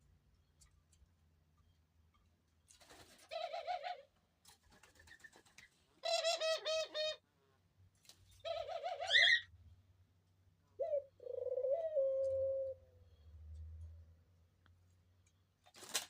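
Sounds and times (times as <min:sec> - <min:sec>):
dove cooing: 0:03.3 - 0:04.1, 0:06.0 - 0:07.2, 0:08.4 - 0:09.5, 0:10.7 - 0:13.0.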